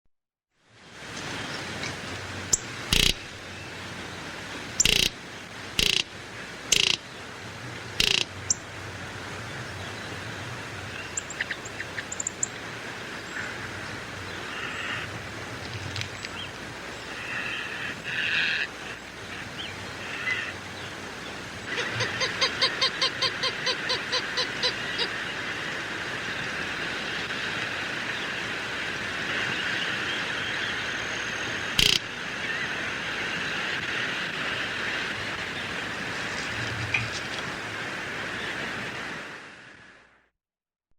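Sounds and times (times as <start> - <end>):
outdoor background hiss: 0.6 - 40.3
roadrunner calling: 2.5 - 3.3, 5.8 - 6.1, 6.7 - 7.0, 8.0 - 8.6, 21.7 - 25.2.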